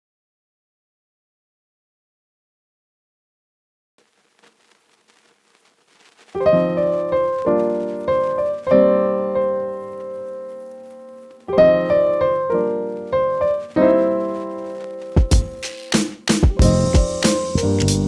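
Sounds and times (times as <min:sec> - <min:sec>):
piano chords: 0:06.4 - 0:18.0.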